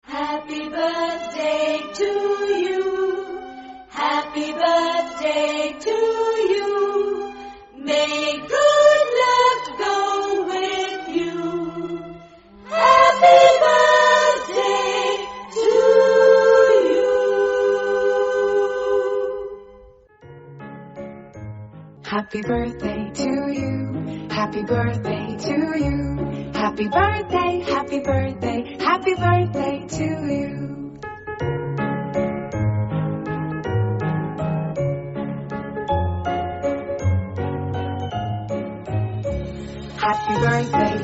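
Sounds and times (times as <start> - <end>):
choir singing a cappella: 0.1 - 19.7.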